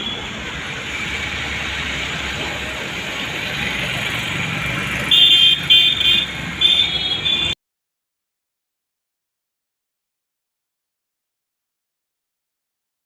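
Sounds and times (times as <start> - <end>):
road traffic noise: 0.0 - 7.6
vehicle horn honking: 5.1 - 7.6.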